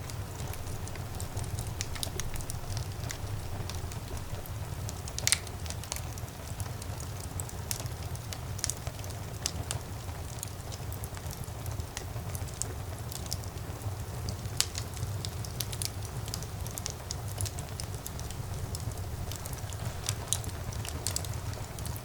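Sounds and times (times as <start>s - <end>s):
fire flames rumbling: 0.0s - 22.0s
wood fire crackling and popping: 0.0s - 22.0s.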